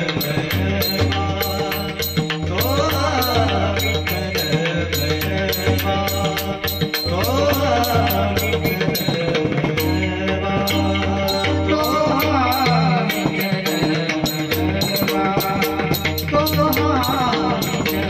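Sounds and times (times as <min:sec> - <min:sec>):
man singing: 0:00.0 - 0:18.0.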